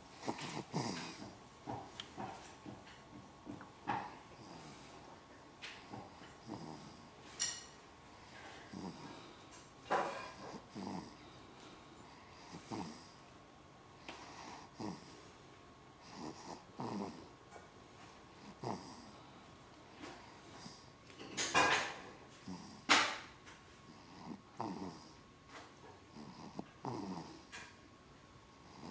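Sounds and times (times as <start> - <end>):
breathy snoring: 0.0 - 2.8, 3.9 - 5.1, 5.7 - 7.2, 8.2 - 13.2, 14.0 - 15.3, 16.0 - 17.4, 18.4 - 23.2, 23.9 - 25.2, 26.1 - 27.7, 28.6 - 28.9.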